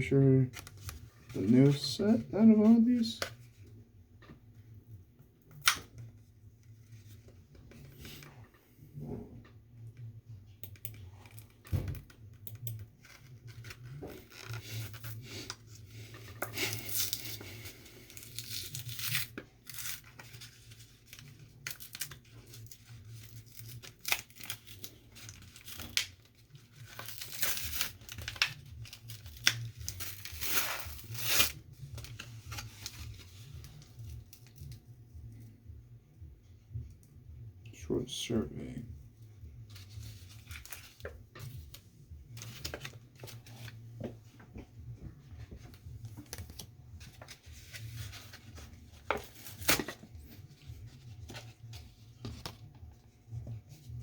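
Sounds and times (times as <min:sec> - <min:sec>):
wrappers tearing and crinkling: 0:12.5 - 0:34.6, 0:46.1 - 0:51.9.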